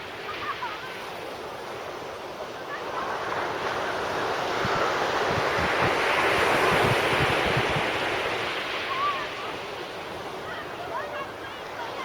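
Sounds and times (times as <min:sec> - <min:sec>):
wave breaking on beach: 0:02.7 - 0:12.0
wind buffeting microphone: 0:03.9 - 0:08.6.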